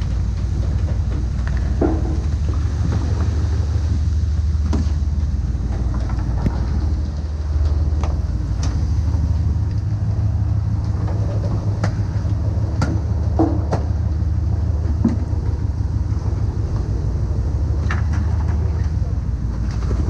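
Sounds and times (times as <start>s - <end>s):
boat engine droning: 0.0s - 20.0s
sharp knocks and clicks: 10.9s - 14.1s.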